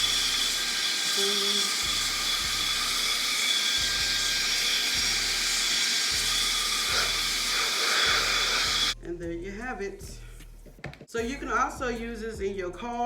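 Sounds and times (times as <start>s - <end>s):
mini vacuum running: 0.0s - 9.0s.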